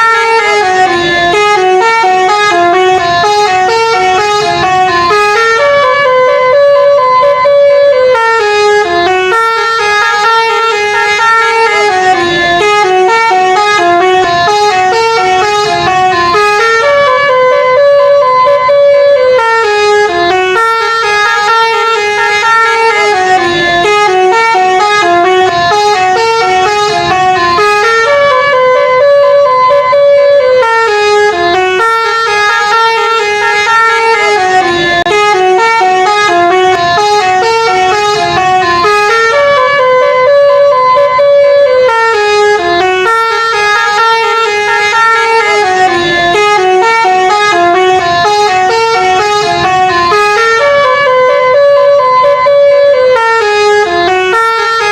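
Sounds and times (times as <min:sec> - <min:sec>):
multi-tone bus horn melody: 0:00.0 - 0:54.9.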